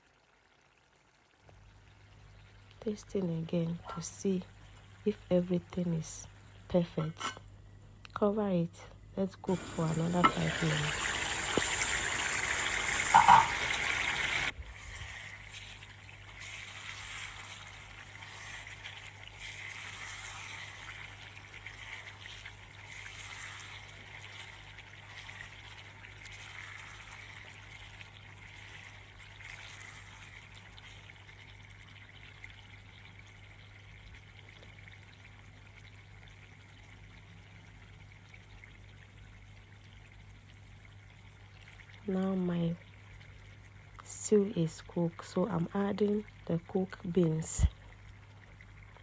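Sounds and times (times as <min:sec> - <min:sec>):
stew bubbling in a pot: 0:00.0 - 0:07.8, 0:09.0 - 0:49.0
steady low hum: 0:02.2 - 0:15.2.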